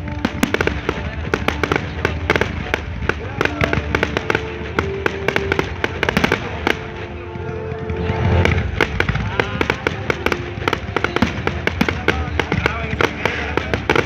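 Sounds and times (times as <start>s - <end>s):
fireworks crackling and popping: 0.0s - 14.0s
deep firework boom: 7.8s - 14.0s.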